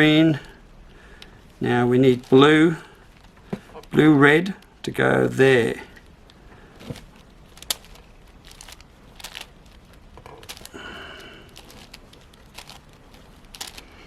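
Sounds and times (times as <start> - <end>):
puzzle cube clicking and rattling: 6.8 - 14.0.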